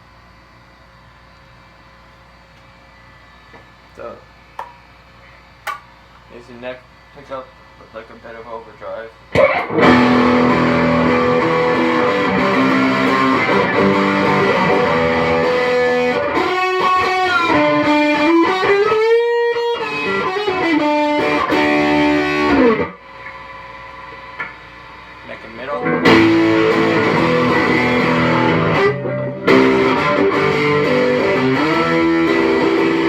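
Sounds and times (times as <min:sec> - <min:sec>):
overdriven electric guitar: 0:09.4 - 0:23.0, 0:25.7 - 0:33.0.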